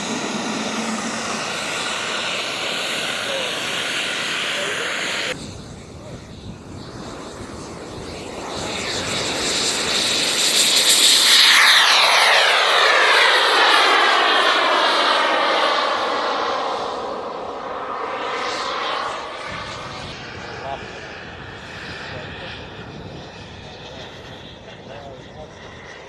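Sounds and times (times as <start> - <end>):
model airplane engine passing: 0.0 - 26.0.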